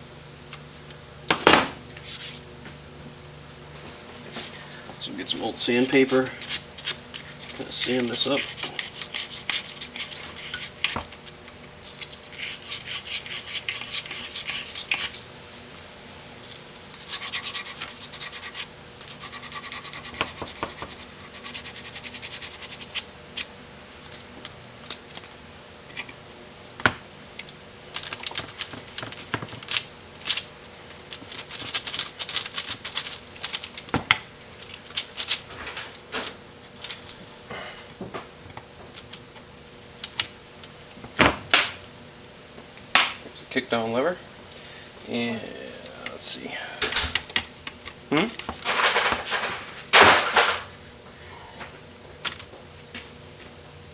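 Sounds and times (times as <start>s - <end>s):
sandpaper rasping on metal: 12.0s - 15.2s, 17.0s - 23.0s.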